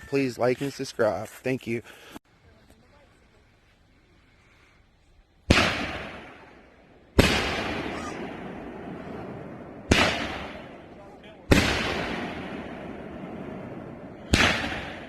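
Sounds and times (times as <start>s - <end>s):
fireworks booming: 5.4s - 15.0s.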